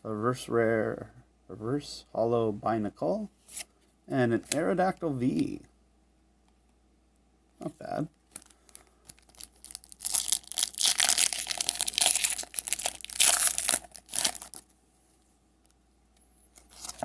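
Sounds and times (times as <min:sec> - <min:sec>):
foil wrapper tearing and crinkling: 0:08.3 - 0:14.6.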